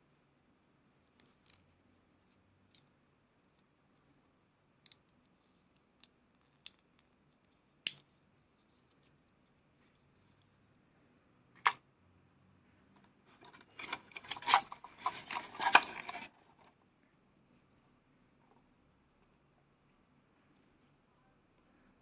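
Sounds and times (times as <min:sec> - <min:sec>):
toy pieces scraping and rustling: 0:13.3 - 0:16.7.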